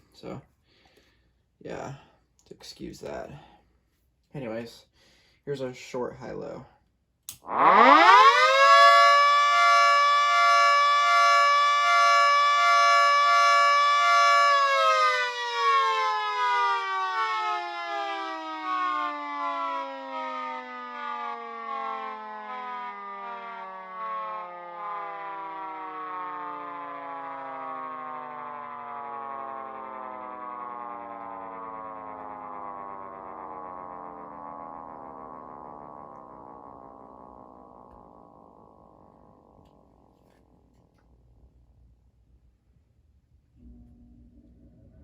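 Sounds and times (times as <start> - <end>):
dual-tone siren winding: 7.3 - 40.4.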